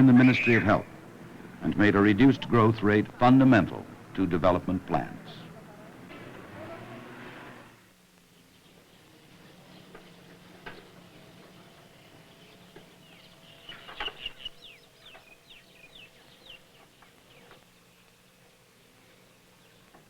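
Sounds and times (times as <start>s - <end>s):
bird chirping: 0.0s - 2.8s, 8.3s - 20.0s
faint steady hum: 0.0s - 20.0s.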